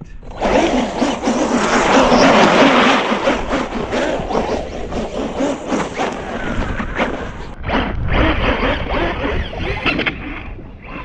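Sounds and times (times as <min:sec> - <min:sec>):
tyres churning snow: 0:00.2 - 0:10.2
electric motor whine: 0:00.2 - 0:11.0.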